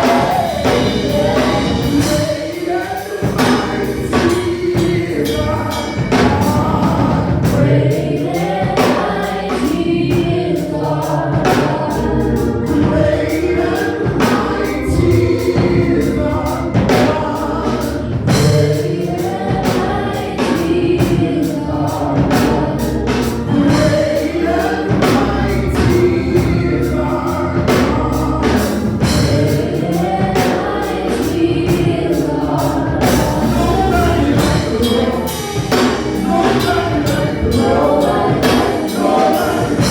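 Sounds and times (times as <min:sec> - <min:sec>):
band accompaniment: 0:00.0 - 0:39.9
gospel choir singing: 0:00.0 - 0:39.9
percussion beat: 0:33.0 - 0:39.9.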